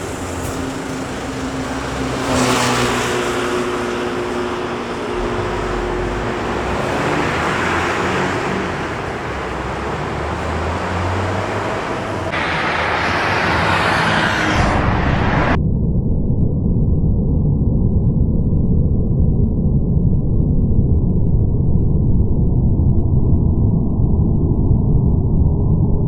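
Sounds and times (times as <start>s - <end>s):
road traffic passing: 0.0s - 15.6s
low muffled rumble: 4.8s - 6.9s, 12.1s - 21.5s.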